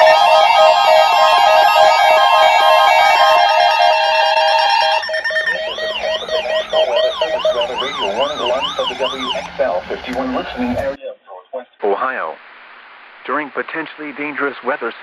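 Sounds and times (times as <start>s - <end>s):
siren-like sweeping tone: 0.0s - 11.0s
steady alarm tones: 0.0s - 11.0s.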